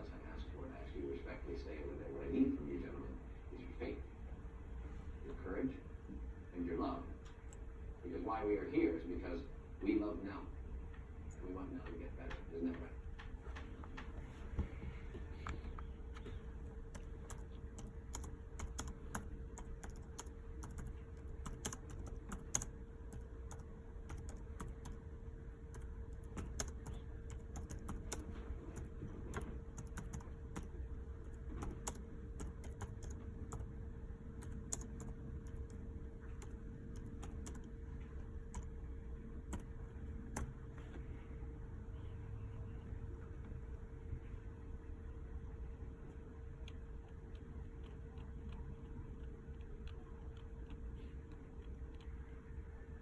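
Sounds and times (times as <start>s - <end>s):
low electrical hum: 0.0s - 53.0s
keyboard typing: 15.4s - 25.0s, 25.7s - 33.7s, 34.4s - 37.7s, 38.5s - 38.7s, 39.4s - 40.6s, 46.1s - 52.3s.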